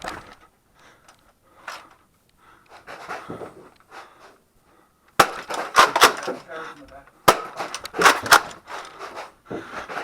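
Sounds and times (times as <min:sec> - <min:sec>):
breathing puffs: 0:00.3 - 0:05.1, 0:08.6 - 0:10.0.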